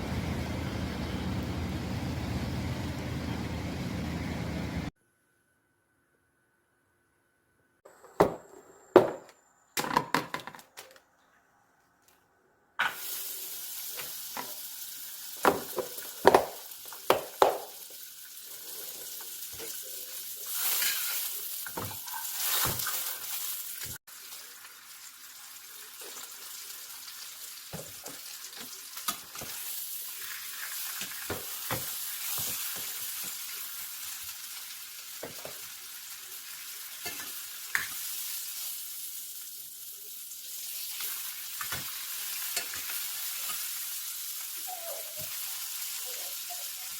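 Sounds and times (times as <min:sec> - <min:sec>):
food sizzling in a frying pan: 0:12.8 - 0:46.9.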